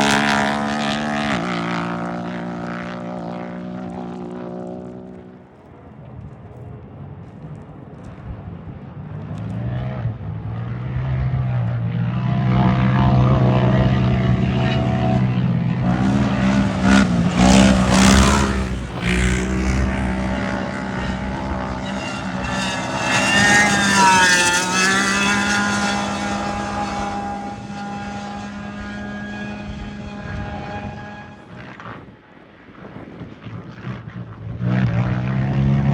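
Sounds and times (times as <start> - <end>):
off-road vehicle engines droning: 0.0 - 35.9.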